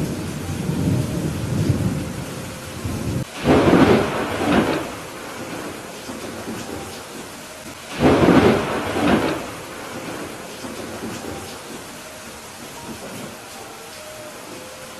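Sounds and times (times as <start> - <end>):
sharp thunderclap: 0.0 - 12.0
thunder rumbling: 0.0 - 13.7
steady rain: 0.0 - 14.9.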